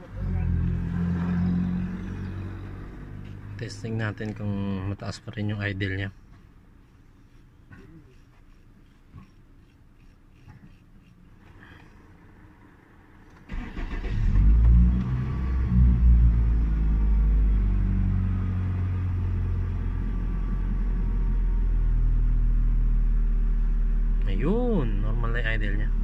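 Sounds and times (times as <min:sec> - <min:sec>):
car engine starting and revving: 0:00.0 - 0:03.9, 0:13.4 - 0:21.0.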